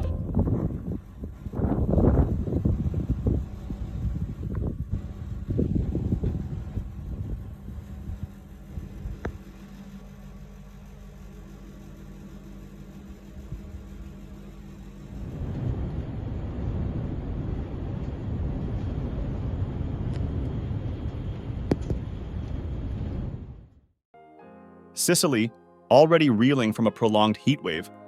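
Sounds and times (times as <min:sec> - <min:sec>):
storm wind rumbling on microphone: 0:00.0 - 0:09.4, 0:15.1 - 0:23.8.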